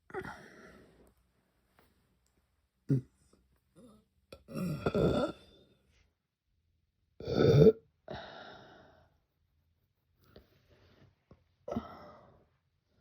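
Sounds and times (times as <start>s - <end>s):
woman burping: 4.4s - 5.4s.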